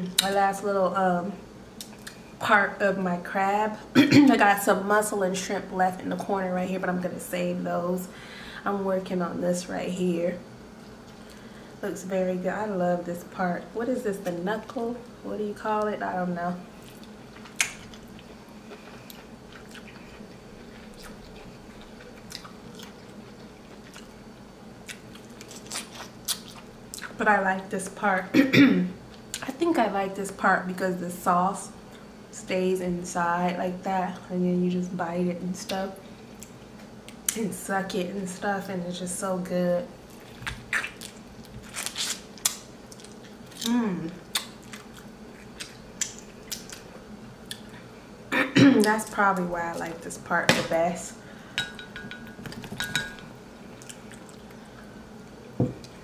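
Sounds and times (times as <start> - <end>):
person humming: 43.6 - 44.2.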